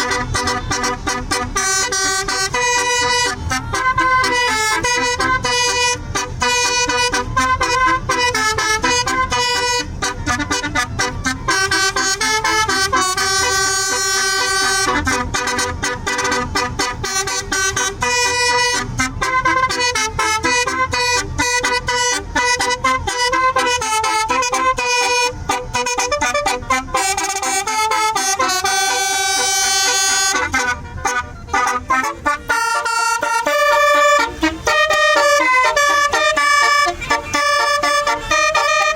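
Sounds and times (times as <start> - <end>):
musical bus horn playing a tune: 0.0 - 38.9.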